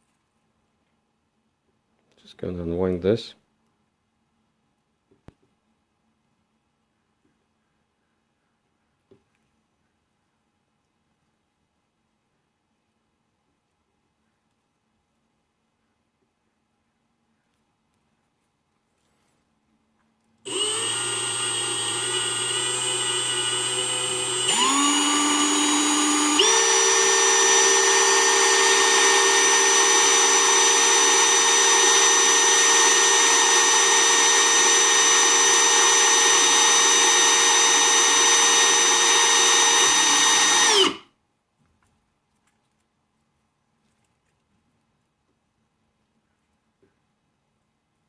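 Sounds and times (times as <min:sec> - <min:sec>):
power drill running: 0:20.4 - 0:41.1.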